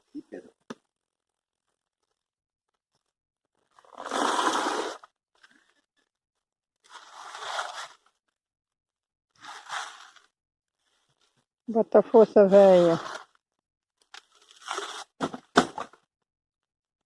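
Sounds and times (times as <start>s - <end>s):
hoe scraping through dirt and stones: 3.8s - 5.1s, 6.9s - 8.0s, 9.4s - 10.3s, 12.4s - 13.3s.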